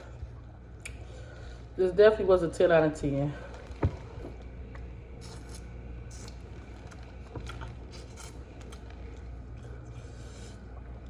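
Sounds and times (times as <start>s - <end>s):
steady low hum: 0.0s - 11.0s
soft eating clicks and scrapes: 3.4s - 11.0s.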